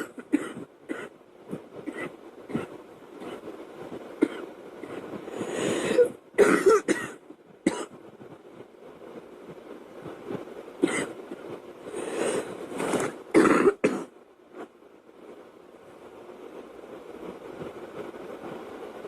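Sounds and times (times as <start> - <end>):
girl coughing: 0.0 - 1.1, 5.8 - 7.9, 10.8 - 11.1, 13.4 - 14.1
long drawn-in breath: 5.3 - 6.1, 11.9 - 12.6.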